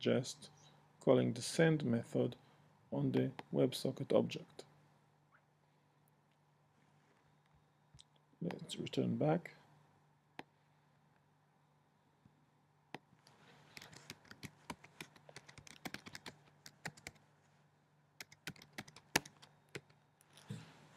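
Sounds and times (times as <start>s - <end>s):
computer keyboard typing: 13.8s - 17.2s, 18.2s - 20.0s.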